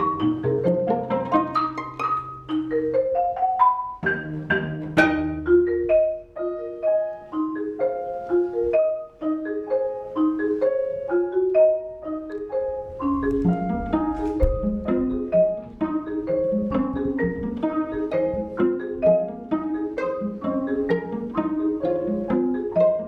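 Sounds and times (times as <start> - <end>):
mallet percussion notes: 0.0 - 23.0.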